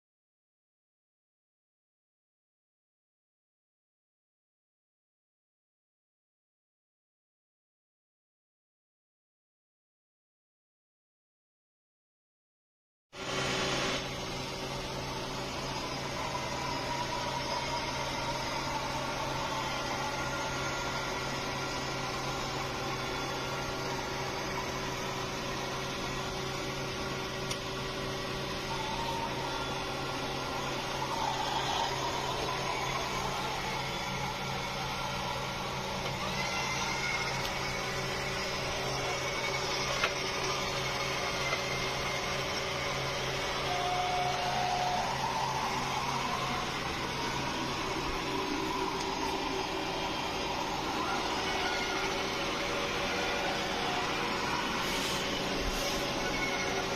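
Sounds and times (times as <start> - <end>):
robot vacuum cleaner running: 13.2 - 56.9.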